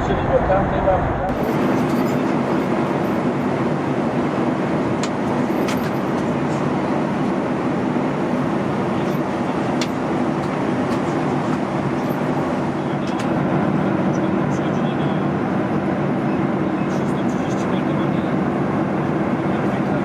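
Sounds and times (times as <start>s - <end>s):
vehicle running heard from inside: 0.0s - 20.0s.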